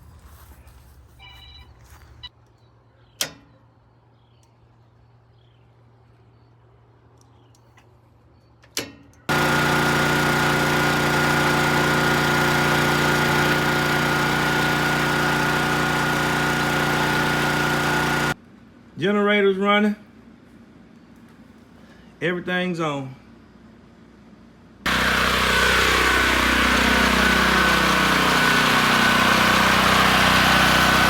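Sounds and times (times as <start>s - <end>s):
generator engine humming: 9.3s - 18.4s, 24.9s - 31.0s.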